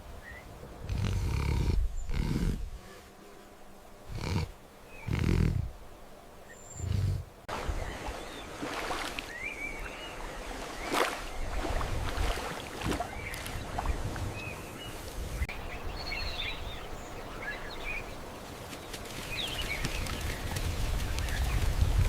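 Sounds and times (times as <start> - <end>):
bird chirps: 14.4 - 18.2.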